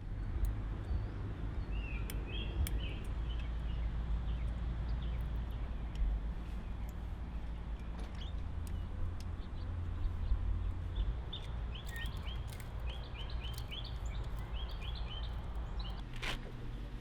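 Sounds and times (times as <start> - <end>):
bird chirps: 10.9 - 16.0.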